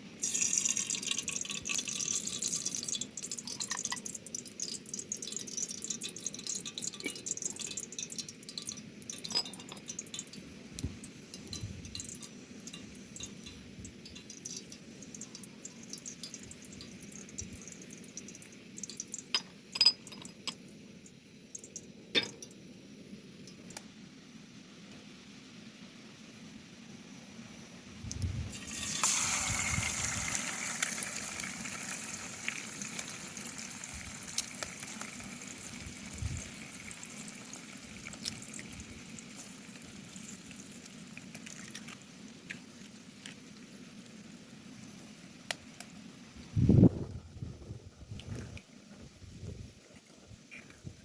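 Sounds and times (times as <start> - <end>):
food sizzling in a pan: 0.1 - 19.3, 28.5 - 45.8
utensil clinking on pan: 8.5 - 10.3.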